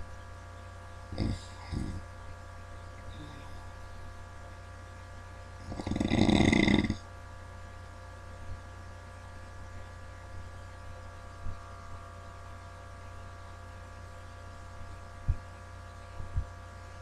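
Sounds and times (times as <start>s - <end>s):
electrical hum: 0.0s - 17.0s
person snoring: 1.1s - 2.0s, 3.1s - 3.7s, 5.6s - 7.0s.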